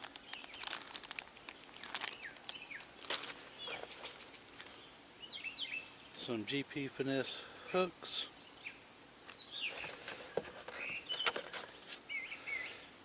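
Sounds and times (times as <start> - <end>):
plastic packaging rustling: 0.0 - 4.8, 9.7 - 12.0
bird chirps: 0.2 - 1.2, 3.6 - 6.2, 8.4 - 10.0, 10.7 - 11.5, 12.1 - 12.8.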